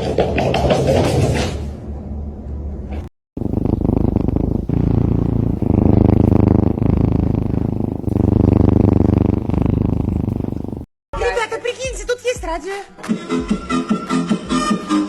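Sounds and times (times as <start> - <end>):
cat purring: 3.4 - 10.9.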